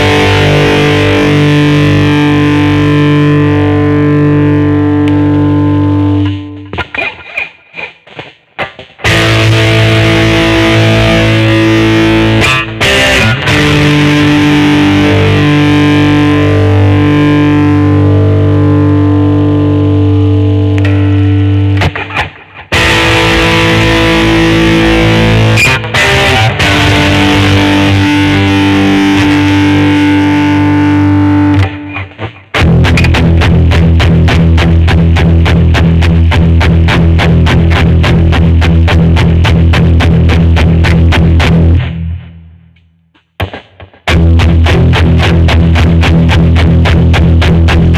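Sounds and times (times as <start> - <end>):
choked guitar stabs: 0.0 - 47.9
distorted electric guitar chords: 0.0 - 47.9.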